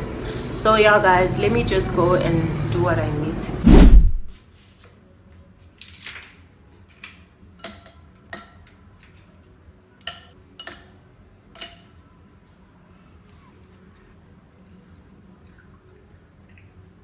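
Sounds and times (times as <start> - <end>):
hard objects clinking: 7.6 - 9.2, 10.0 - 11.0, 11.6 - 11.9.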